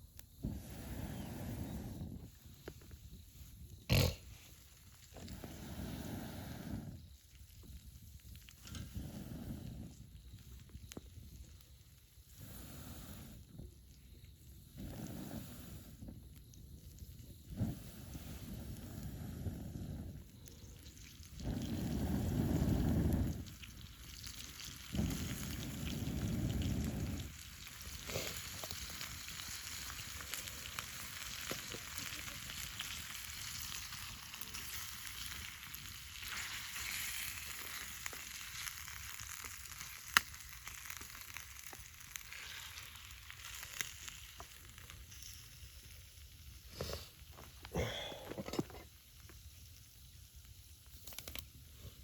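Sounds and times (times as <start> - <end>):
crackling pops: 20.3 - 47.8, 50.4 - 51.5
food sizzling in a pan: 20.5 - 47.1.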